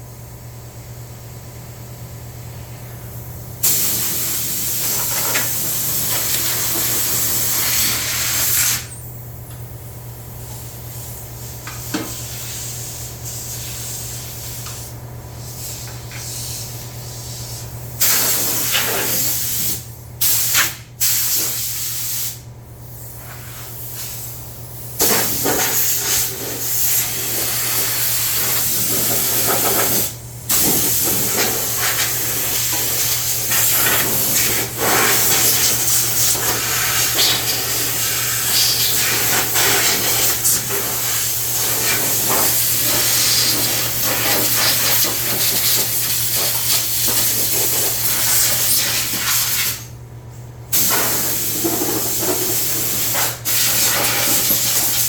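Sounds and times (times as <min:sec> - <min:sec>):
high-pressure spray hissing: 0:03.6 - 0:08.9, 0:25.0 - 0:49.9, 0:50.7 - 0:55.0.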